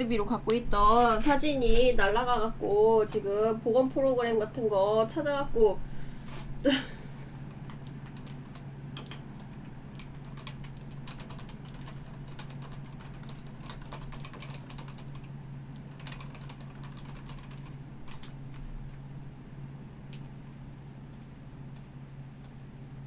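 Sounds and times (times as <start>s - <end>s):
steady low hum: 0.0s - 23.0s
keyboard typing clicks: 7.5s - 18.7s, 20.1s - 22.7s.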